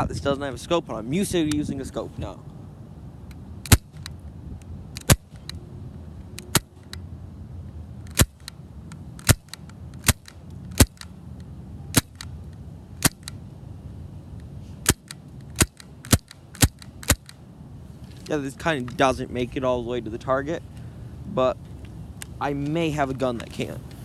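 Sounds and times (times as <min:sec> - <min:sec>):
bb pistol shots: 0:03.6 - 0:04.2, 0:05.0 - 0:05.6, 0:06.4 - 0:07.0, 0:08.1 - 0:08.5, 0:09.2 - 0:11.1, 0:11.9 - 0:12.3, 0:13.0 - 0:13.4, 0:14.8 - 0:17.4.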